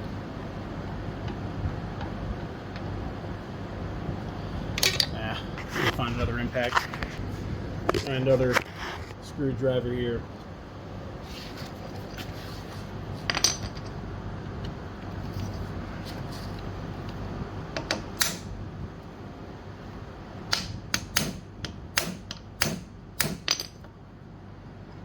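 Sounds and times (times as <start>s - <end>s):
metal tools clinking: 4.8s - 5.4s, 13.3s - 14.0s.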